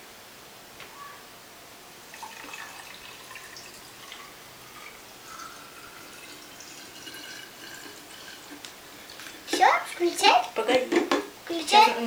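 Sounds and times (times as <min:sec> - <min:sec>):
milk pouring and splashing: 0:02.1 - 0:10.4.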